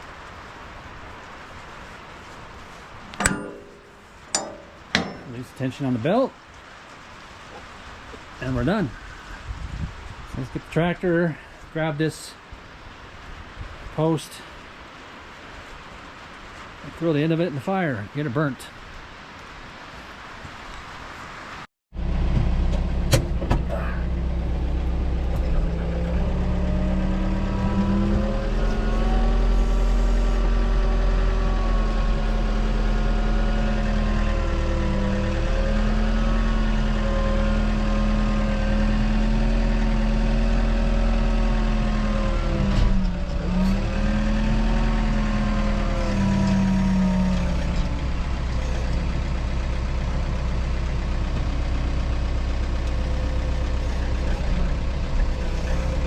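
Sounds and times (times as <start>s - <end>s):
tractor engine running: 1.2s - 8.8s, 21.9s - 56.0s.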